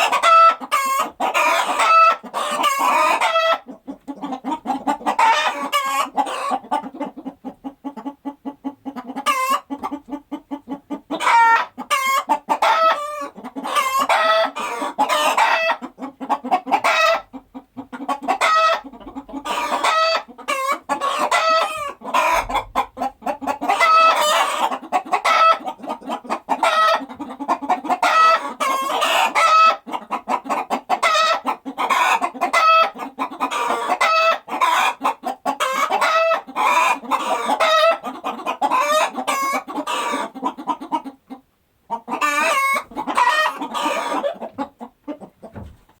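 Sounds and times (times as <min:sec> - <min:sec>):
chickens clucking: 0:00.0 - 0:46.0.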